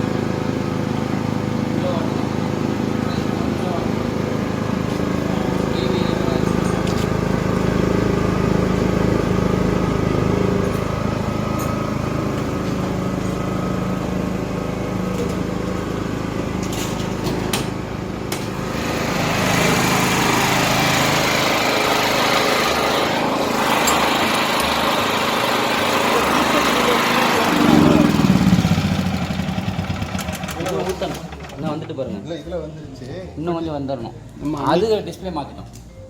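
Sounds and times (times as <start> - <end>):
generator engine humming: 0.0 - 32.6.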